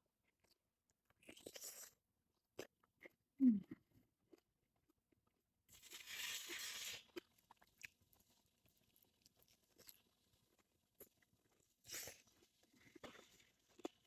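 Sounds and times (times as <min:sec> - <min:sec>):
crunchy chewing: 0:06.1 - 0:14.0.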